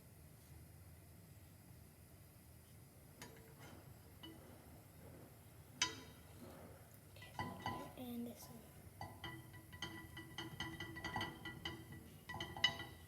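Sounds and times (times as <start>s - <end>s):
utensil tapping frying pan: 3.2s - 5.0s, 5.8s - 6.4s, 7.2s - 8.0s, 8.8s - 13.0s.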